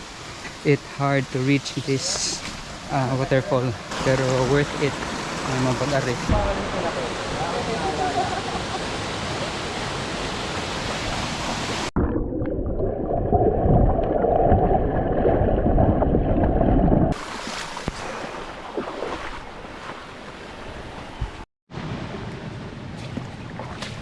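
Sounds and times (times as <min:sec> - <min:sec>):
waterfall rushing: 0:00.7 - 0:11.9.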